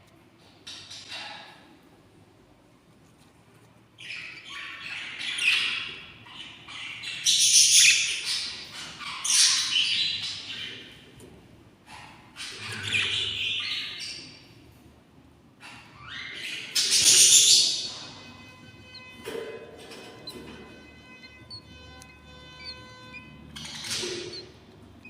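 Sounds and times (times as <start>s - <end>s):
budgerigar chicks begging calls: 16.5s - 25.0s.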